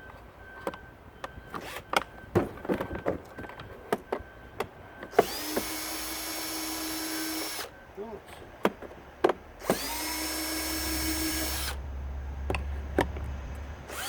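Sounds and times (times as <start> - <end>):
power drill running: 5.1 - 7.8, 9.6 - 11.8.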